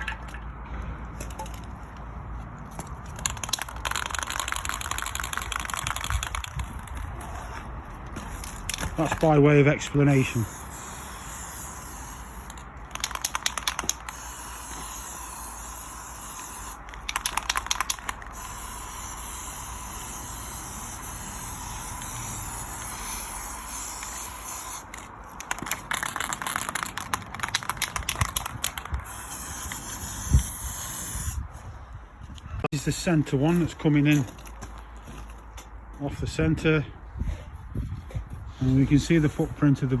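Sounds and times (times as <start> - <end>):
spray can rattling: 2.7 - 7.2, 8.1 - 9.4, 10.0 - 31.4
spray paint hissing: 3.1 - 7.5, 8.1 - 31.5.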